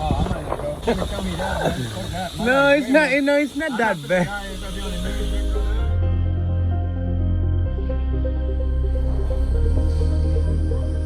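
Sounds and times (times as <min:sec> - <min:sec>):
background music with bass: 0:04.1 - 0:11.0.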